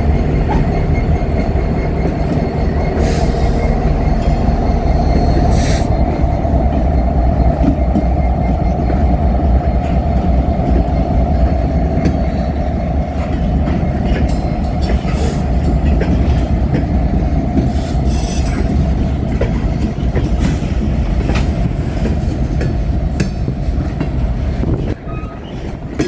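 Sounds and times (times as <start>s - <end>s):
train wheels rumbling on rails: 0.0s - 26.0s
faint wheel squeal: 24.9s - 25.7s.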